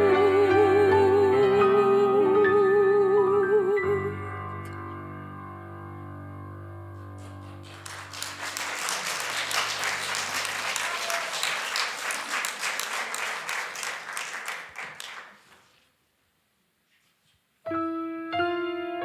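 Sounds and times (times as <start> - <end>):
audience applauding: 7.2 - 15.8.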